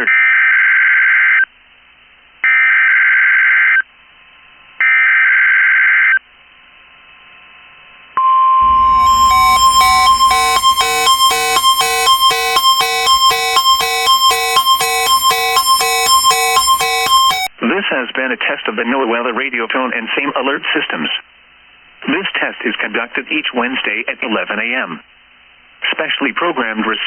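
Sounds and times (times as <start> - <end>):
pulsing multi-tone beeping alarm: 8.6 - 17.5
screeching digital data tones: 8.6 - 17.5
steady alert tone: 8.6 - 17.5.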